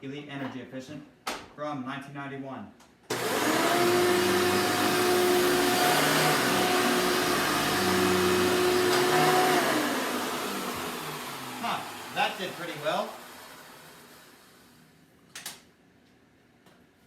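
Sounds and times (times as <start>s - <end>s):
vacuum cleaner running: 3.1s - 14.8s.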